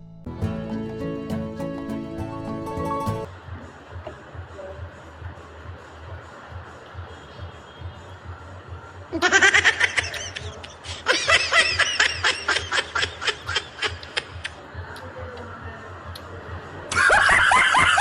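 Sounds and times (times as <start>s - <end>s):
person laughing: 9.2s - 14.5s, 16.9s - 18.0s.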